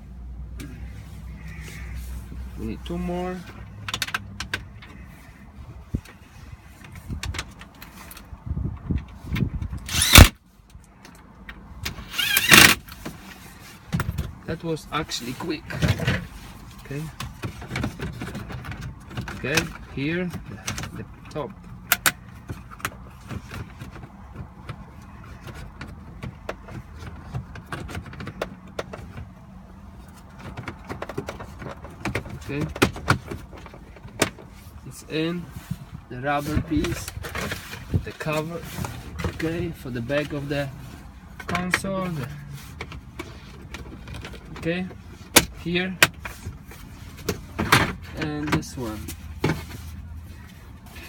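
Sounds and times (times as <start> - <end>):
handling clicks and knocks: 2.9 - 5.0, 15.7 - 34.6, 41.3 - 49.8
screwdriver whir: 9.8 - 10.4, 12.0 - 12.8.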